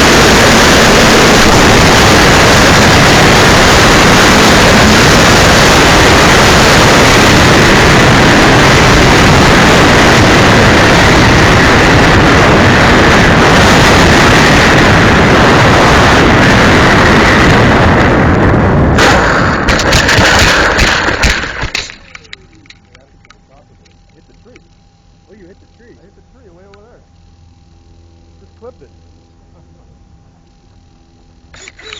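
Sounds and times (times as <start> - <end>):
wind buffeting microphone: 0.0 - 24.5.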